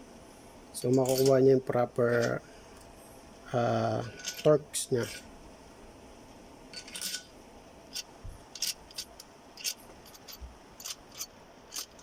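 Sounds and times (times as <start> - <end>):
metal engine parts clicking: 7.9 - 12.0.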